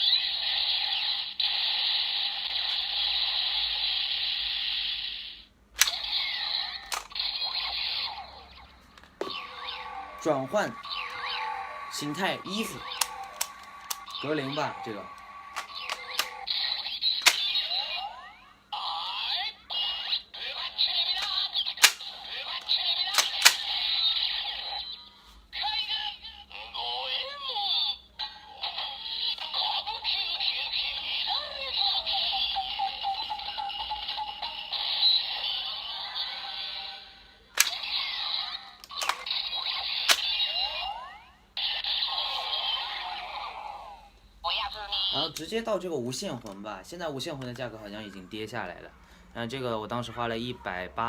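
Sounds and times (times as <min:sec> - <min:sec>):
toy belt electronic chanting tune: 0:00.0 - 0:43.9
toy belt click: 0:05.8 - 0:07.4, 0:12.5 - 0:18.0, 0:20.5 - 0:24.2, 0:37.6 - 0:40.8.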